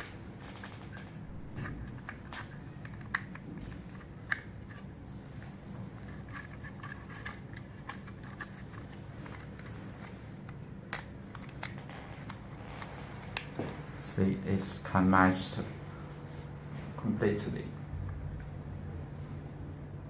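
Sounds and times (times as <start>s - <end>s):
steady low hum: 0.0s - 20.0s
plastic handling clicks: 1.6s - 4.8s, 6.0s - 13.8s.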